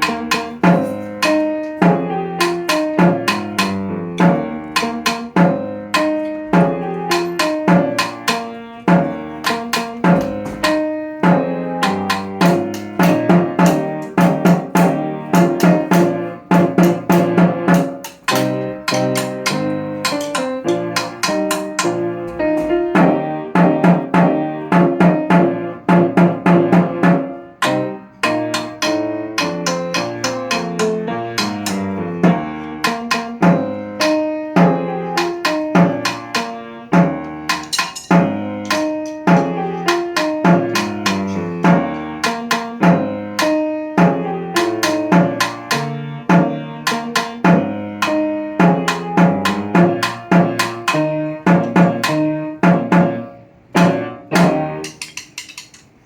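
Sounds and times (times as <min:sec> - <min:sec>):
drums in steady beat: 0:00.0 - 0:22.0, 0:23.0 - 0:27.8, 0:28.6 - 0:53.2
band melody: 0:00.0 - 0:56.0.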